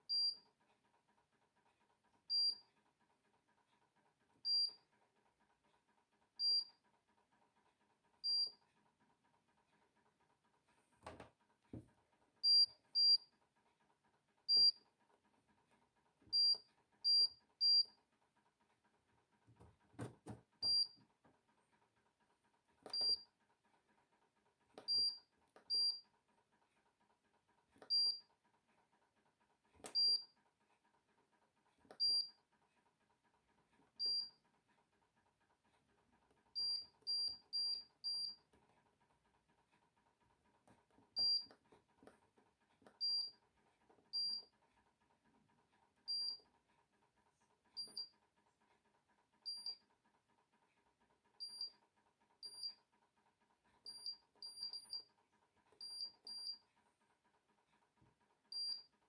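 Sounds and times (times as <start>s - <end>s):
control panel beeping: 55.8s - 56.6s.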